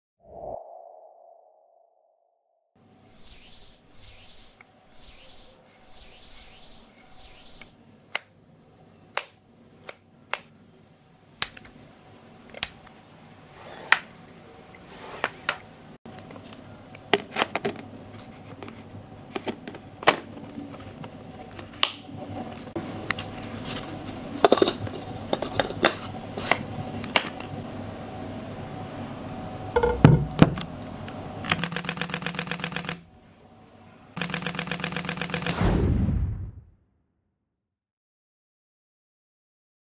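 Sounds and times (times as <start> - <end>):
camera handling knocks: 29.8 - 30.7
rapid burst of shutter clicks: 31.6 - 33.0, 34.2 - 35.6.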